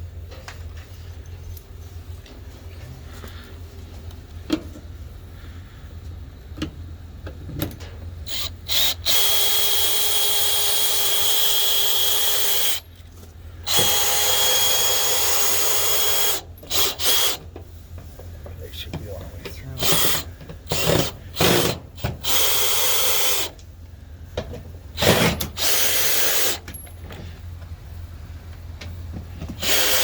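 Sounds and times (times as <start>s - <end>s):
electric drill whining: 8.3s - 12.8s, 13.6s - 17.5s, 19.8s - 23.6s, 25.0s - 26.7s, 29.5s - 30.0s.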